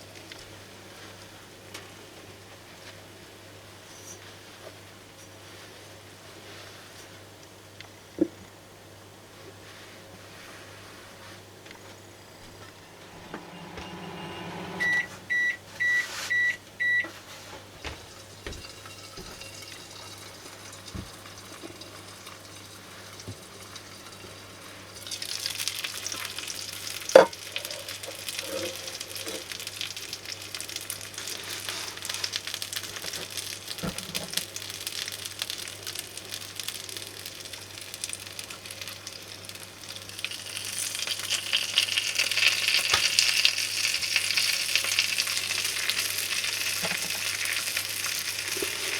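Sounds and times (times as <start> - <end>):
microwave oven beeping: 12.2 - 22.3
fish sizzling in a grill pan: 18.2 - 48.9.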